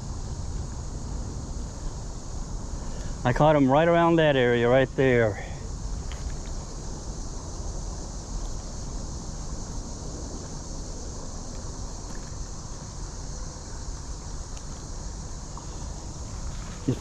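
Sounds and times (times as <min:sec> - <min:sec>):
insects hissing: 0:00.0 - 0:17.0.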